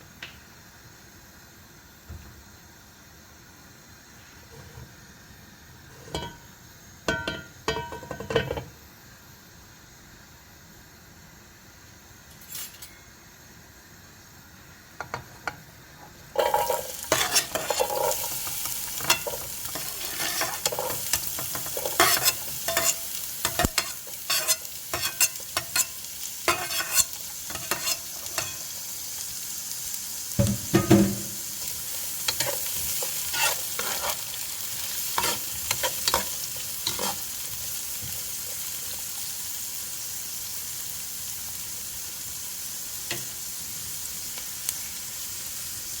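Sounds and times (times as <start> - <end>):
food sizzling in hot oil: 0.2 - 46.0
spoon scraping and knocking pot: 16.4 - 28.6, 30.4 - 31.3, 32.3 - 34.2, 35.2 - 37.2.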